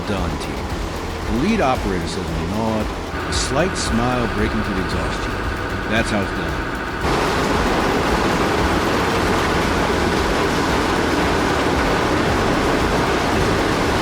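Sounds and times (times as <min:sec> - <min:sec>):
heavy machinery rumbling: 0:00.0 - 0:14.0.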